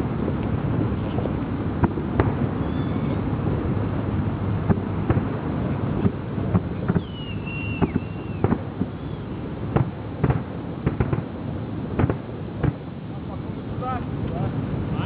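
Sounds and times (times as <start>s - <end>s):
fireworks bangs and cracks: 0.0s - 3.8s, 4.5s - 12.9s
firework whistle gliding downward: 2.2s - 3.4s, 6.7s - 9.5s.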